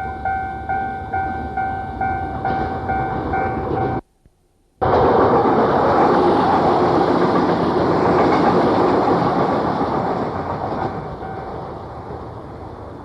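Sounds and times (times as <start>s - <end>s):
train wheels running on rails: 0.0s - 4.1s, 4.8s - 13.0s.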